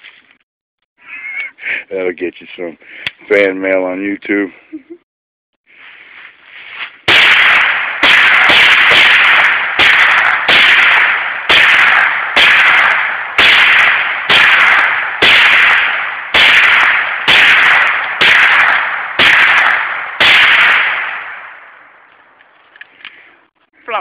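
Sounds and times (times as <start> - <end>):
rifle shots echoing: 7.1 - 22.1.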